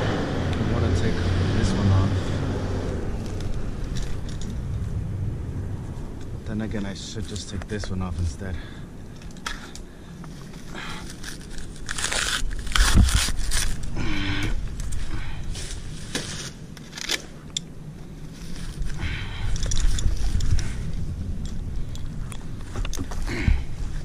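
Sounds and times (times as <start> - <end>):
dry palm fronds crunching: 10.2 - 21.8.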